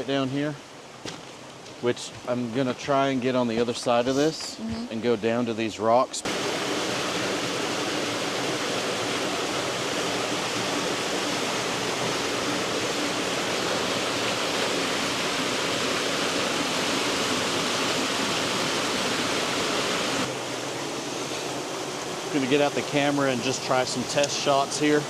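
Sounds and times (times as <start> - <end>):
water rushing over cascade: 6.2 - 25.0.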